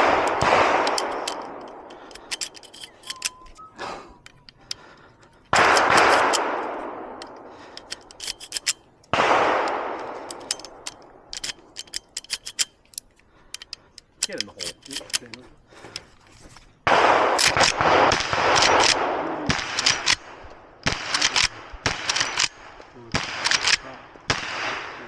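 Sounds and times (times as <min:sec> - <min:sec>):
rifle shots echoing: 0:00.0 - 0:03.4, 0:05.5 - 0:12.5, 0:16.8 - 0:25.0
rifle action clicking: 0:00.0 - 0:16.1, 0:17.2 - 0:19.0, 0:19.6 - 0:22.8, 0:23.4 - 0:23.8.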